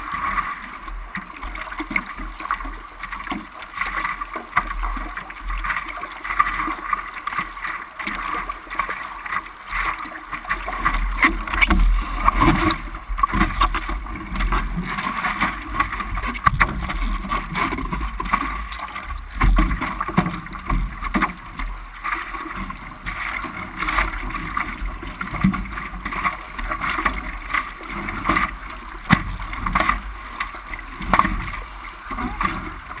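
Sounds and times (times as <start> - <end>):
sea water sloshing: 0.0 - 33.0
wind rumble on microphone: 10.8 - 33.0.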